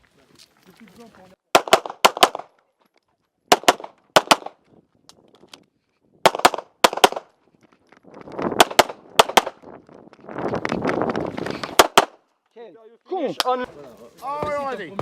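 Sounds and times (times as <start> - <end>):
handgun shots: 1.6 - 2.5, 3.5 - 4.6.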